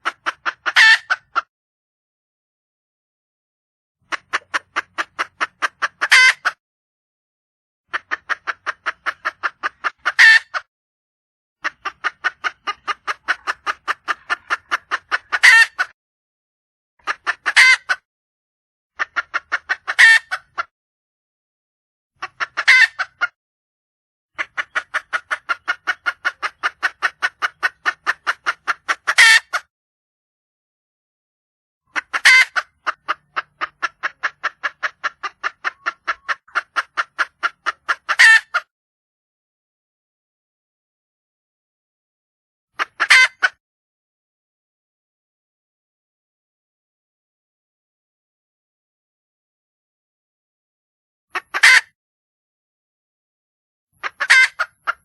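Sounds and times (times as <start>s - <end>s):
junglefowl hen calling: 0.0s - 1.5s, 4.1s - 6.6s, 7.9s - 10.7s, 11.6s - 16.0s, 17.0s - 18.0s, 19.0s - 20.7s, 22.2s - 23.3s, 24.4s - 29.7s, 31.9s - 38.7s, 42.8s - 43.6s, 51.4s - 52.0s, 54.0s - 55.0s.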